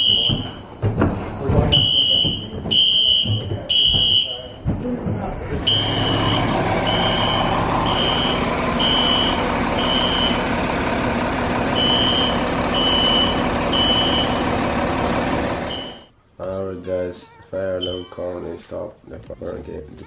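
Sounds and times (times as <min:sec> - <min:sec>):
high-pitched alarm beep: 0:00.0 - 0:10.6, 0:11.8 - 0:14.4, 0:15.7 - 0:16.1, 0:17.8 - 0:18.2.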